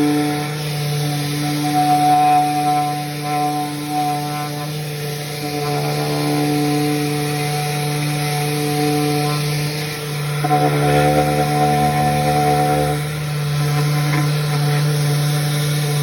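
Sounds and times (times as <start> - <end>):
electric sander running: 0.0 - 16.0.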